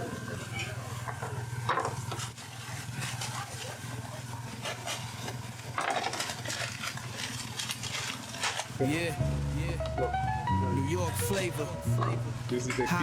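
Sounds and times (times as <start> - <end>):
steady low hum: 8.8 - 13.0.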